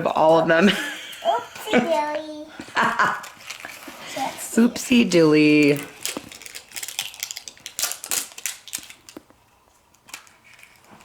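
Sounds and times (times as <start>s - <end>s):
plastic packaging crinkling: 3.1s - 11.0s.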